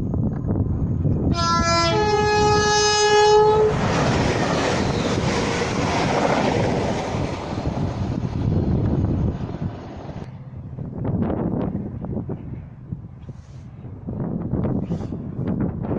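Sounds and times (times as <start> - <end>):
train rushing past: 1.2 - 12.6
train two-tone horn: 1.3 - 3.8.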